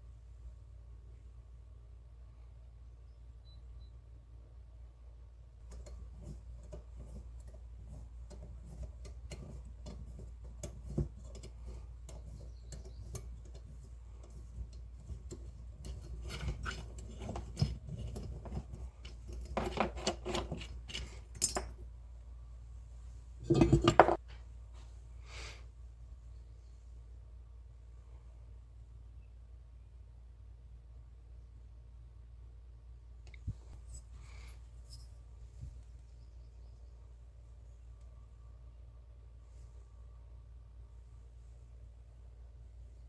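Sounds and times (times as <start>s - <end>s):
metal clinking and rattling: 5.7s - 21.8s, 23.4s - 24.2s
metal clatter: 23.4s - 24.2s.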